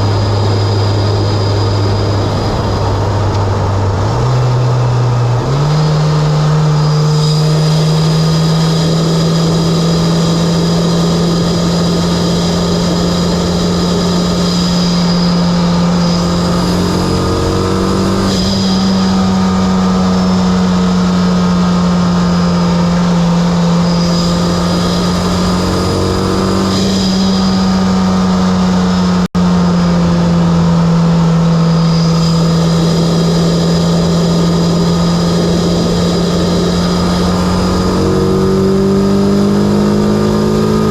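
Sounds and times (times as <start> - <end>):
car engine droning: 0.0 - 40.9.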